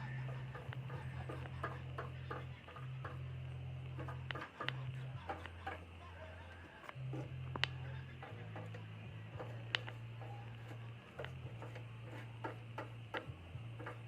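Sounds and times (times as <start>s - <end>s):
low steady hum: 0.0s - 14.0s
sharp clicks and taps: 3.9s - 5.9s, 6.8s - 14.0s.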